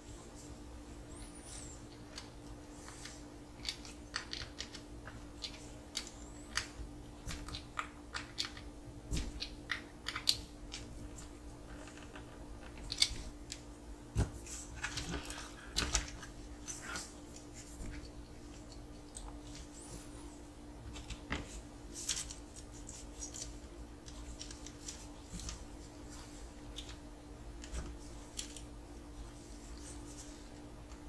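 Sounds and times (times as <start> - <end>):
steady low hum: 0.0 - 31.0
small plastic parts clicking: 9.4 - 10.9.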